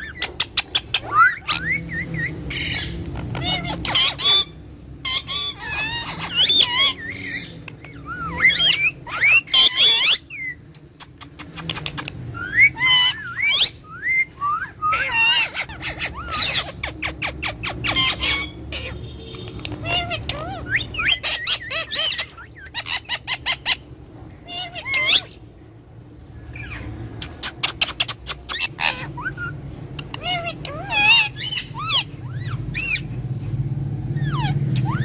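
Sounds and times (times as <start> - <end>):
parrots chattering and whistling: 0.0 - 35.0
sharp clicks: 19.3 - 19.8.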